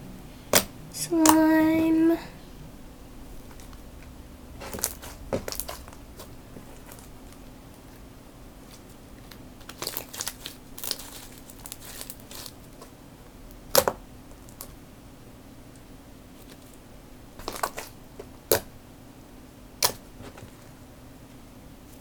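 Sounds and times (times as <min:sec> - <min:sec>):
slime squishing: 0:00.4 - 0:01.6, 0:02.4 - 0:14.8, 0:17.4 - 0:18.8, 0:19.8 - 0:20.8.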